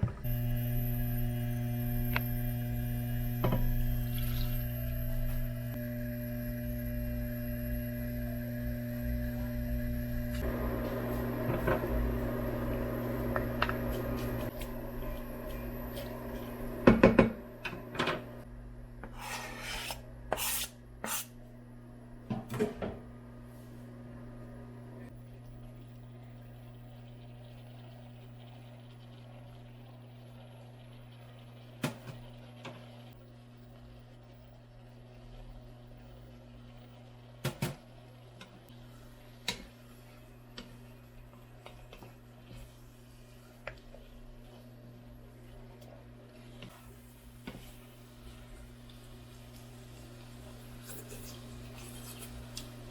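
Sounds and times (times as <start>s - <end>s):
steady low hum: 0.0s - 22.3s
low electrical hum: 0.0s - 52.9s.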